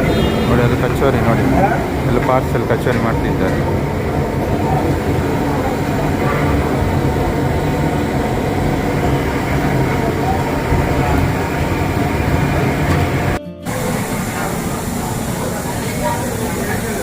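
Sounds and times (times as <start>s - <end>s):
street noise: 0.0s - 17.0s
traffic rumble: 0.0s - 17.0s.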